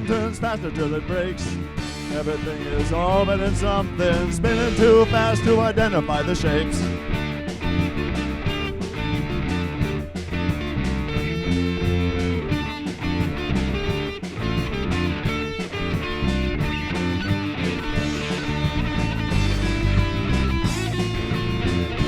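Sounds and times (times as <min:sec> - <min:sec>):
bass guitar: 0:00.0 - 0:22.0
electric guitar: 0:00.0 - 0:22.0
steady drum beat: 0:00.0 - 0:22.0.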